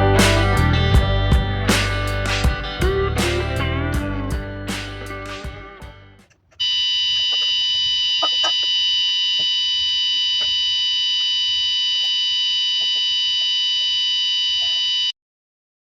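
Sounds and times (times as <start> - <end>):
high-pitched alarm buzzer: 6.6 - 15.1.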